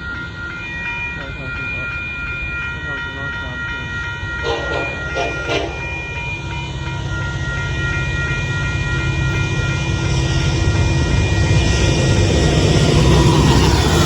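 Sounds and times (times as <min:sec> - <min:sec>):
thin high tones: 0:00.0 - 0:08.8
diesel freight train rumble: 0:00.0 - 0:14.0.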